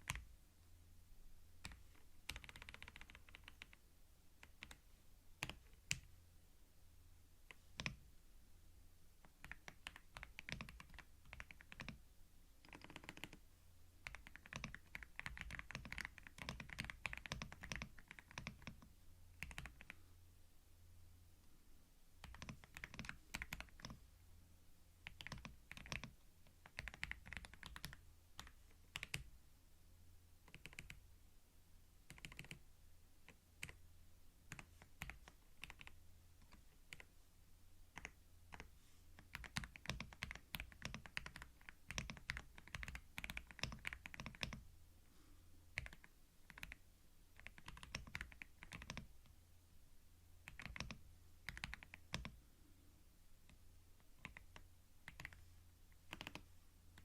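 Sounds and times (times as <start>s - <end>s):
typing on computer keyboard: 1.6s - 3.8s, 4.4s - 4.8s, 7.5s - 8.0s, 9.2s - 12.0s, 12.6s - 13.4s, 14.0s - 20.0s, 22.2s - 24.0s, 25.0s - 29.3s, 30.5s - 31.0s, 32.1s - 32.6s, 34.5s - 37.1s, 38.0s - 44.6s, 45.8s - 46.8s, 47.4s - 49.1s, 50.4s - 52.4s, 54.1s - 57.0s.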